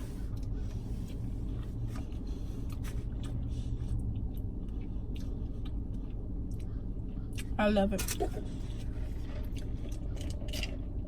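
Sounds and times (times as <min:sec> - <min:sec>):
car interior hum: 0:00.0 - 0:11.0.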